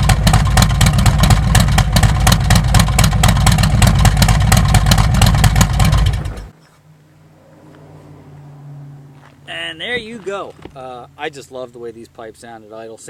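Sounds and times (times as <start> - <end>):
motorcycle engine idling: 0.0 - 6.6.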